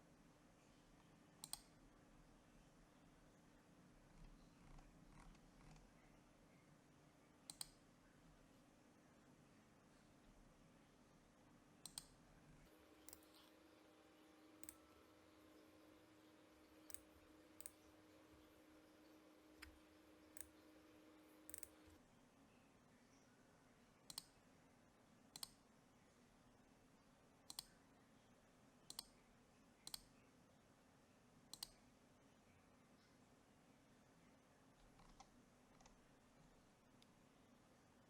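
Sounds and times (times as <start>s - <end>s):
faint steady hum: 0.0s - 38.0s
computer mouse buttons clicking: 1.4s - 1.7s, 7.5s - 7.8s, 11.8s - 12.2s, 14.4s - 22.0s, 24.1s - 24.4s, 25.4s - 25.6s, 27.5s - 27.8s, 28.9s - 29.2s, 29.8s - 30.1s, 31.5s - 31.8s, 34.9s - 36.0s.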